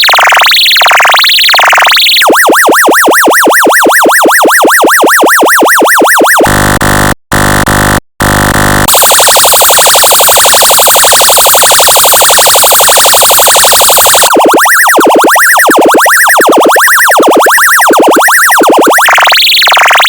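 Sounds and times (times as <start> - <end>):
high pulsing alarm tone: 0.0 - 20.0
sweeping electronic siren: 0.0 - 20.0
harsh buzzy horn tone: 6.4 - 9.0.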